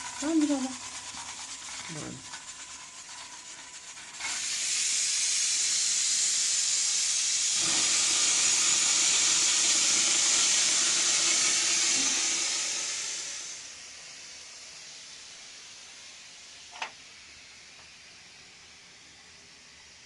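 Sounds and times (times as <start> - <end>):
loud steady hiss: 0.0 - 20.0.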